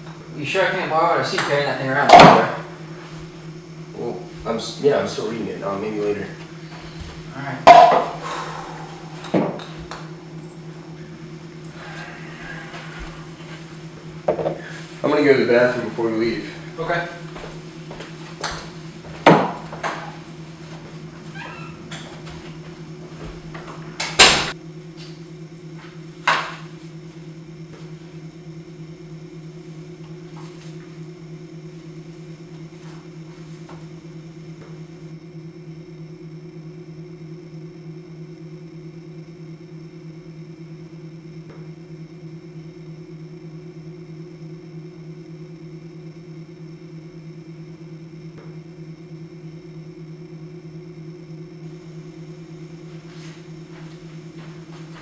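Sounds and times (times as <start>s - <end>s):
steady low hum: 0.0s - 55.0s
loud sharp knock: 2.1s - 2.6s.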